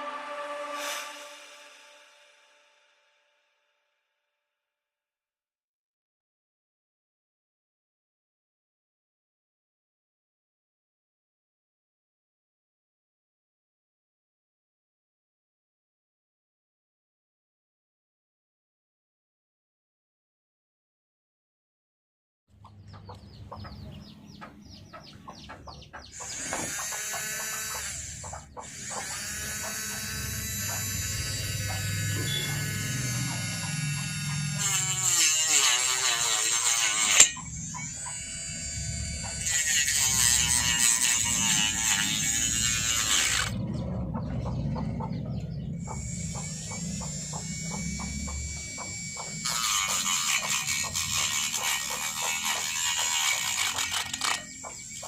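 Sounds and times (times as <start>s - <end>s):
small electric motor running: 25.3s - 55.0s
grinding disc high-pitched noise: 25.4s - 55.0s.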